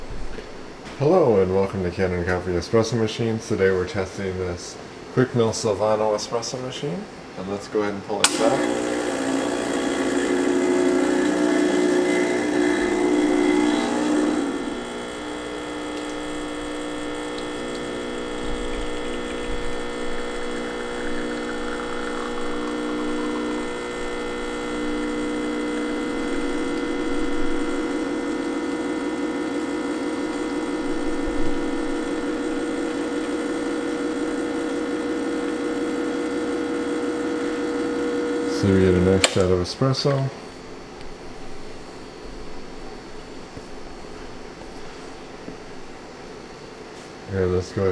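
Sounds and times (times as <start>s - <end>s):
espresso machine pump humming: 8.2s - 39.6s.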